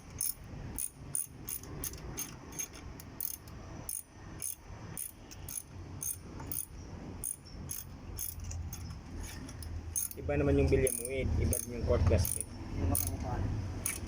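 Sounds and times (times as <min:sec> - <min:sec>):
ratchet wrench clicking: 0:00.0 - 0:14.0.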